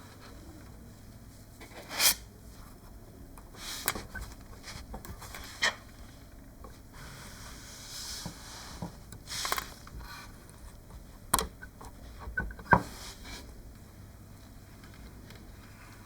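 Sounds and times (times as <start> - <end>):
small parts scraping and rustling: 7.8 - 13.5.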